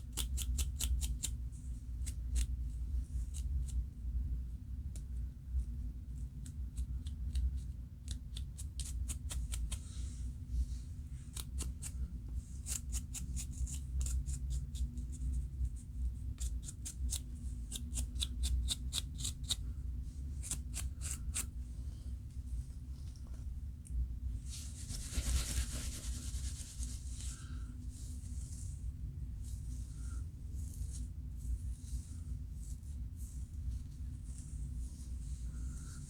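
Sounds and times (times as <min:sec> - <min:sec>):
low steady hum: 0:00.0 - 0:36.0
fingers scratching scalp: 0:08.3 - 0:10.0, 0:12.6 - 0:14.9, 0:16.4 - 0:19.6, 0:20.4 - 0:21.5.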